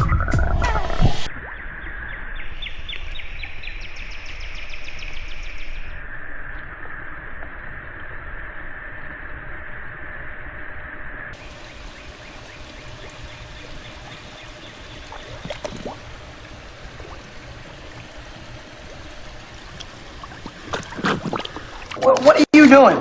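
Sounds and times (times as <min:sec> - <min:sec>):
small water splashes: 0:11.4 - 0:22.3
water sloshing and trickling: 0:11.4 - 0:22.3.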